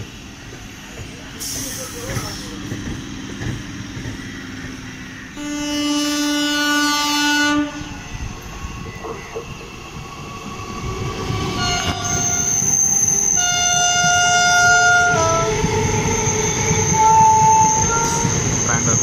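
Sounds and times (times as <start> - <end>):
moving train rumble: 0.0 - 19.0
train horn blasts: 5.4 - 8.1, 11.6 - 12.2, 13.4 - 18.3.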